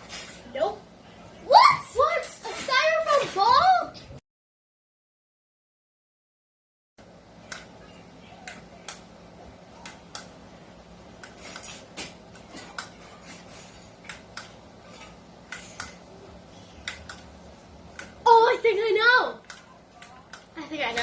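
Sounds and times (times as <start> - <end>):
faint steady hum: 7.0 - 21.0.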